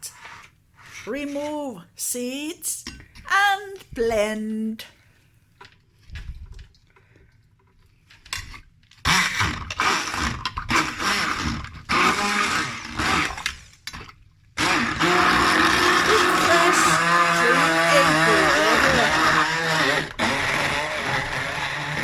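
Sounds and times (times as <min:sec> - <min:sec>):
hand blender running: 0:14.6 - 0:22.0.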